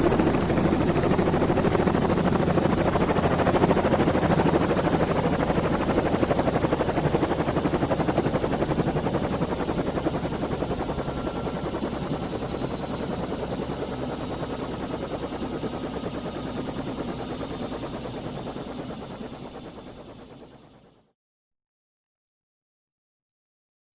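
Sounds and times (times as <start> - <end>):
mechanical drone with rapid chop: 0.0 - 20.7.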